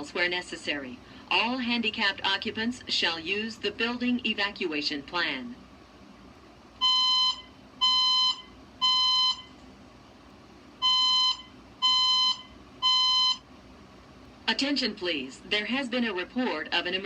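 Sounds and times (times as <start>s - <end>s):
fire alarm beeps: 6.8s - 9.5s, 10.8s - 13.5s.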